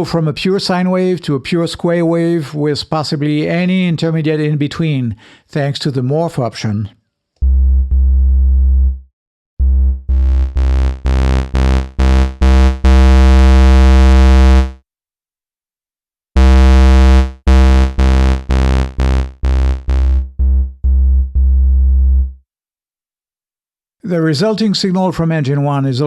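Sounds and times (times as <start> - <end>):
bass synthesizer short notes: 7.4 - 14.8, 16.4 - 22.4.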